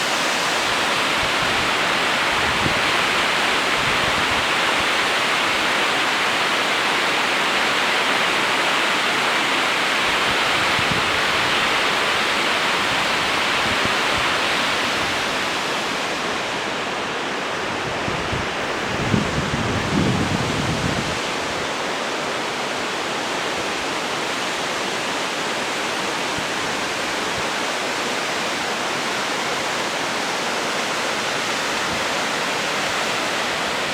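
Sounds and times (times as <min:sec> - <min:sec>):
waterfall rushing: 0:00.0 - 0:33.9
wind buffeting microphone: 0:17.6 - 0:21.7.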